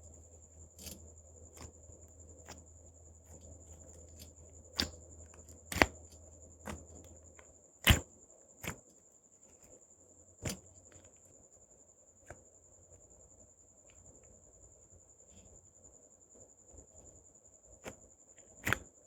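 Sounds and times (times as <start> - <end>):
slime being poked: 4.0 - 7.1, 7.8 - 8.8, 18.6 - 18.9.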